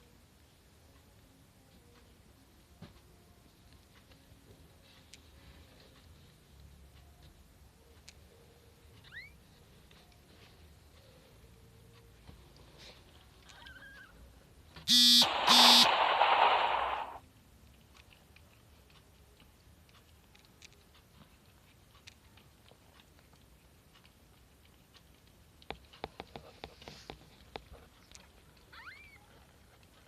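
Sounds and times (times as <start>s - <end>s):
electronic buzzer beeps: 14.9s - 17.2s
hissing noise burst: 15.2s - 17.2s
light clicks and taps: 17.6s - 28.7s.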